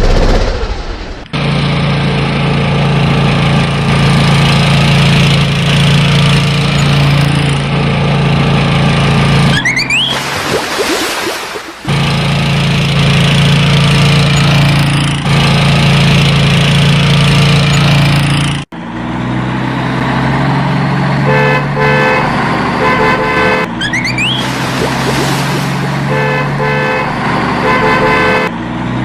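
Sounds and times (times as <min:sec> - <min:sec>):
low vehicle engine drone: 0:00.0 - 0:29.0
short horn toots: 0:21.2 - 0:24.6, 0:25.3 - 0:28.5.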